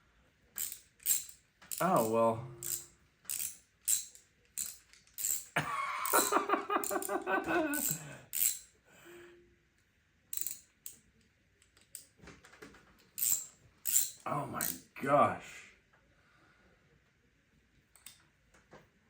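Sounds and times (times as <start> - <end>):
metal tools clinking: 0.6 - 8.7, 13.2 - 14.8
wavering wordless voice: 1.8 - 2.6, 14.3 - 15.8.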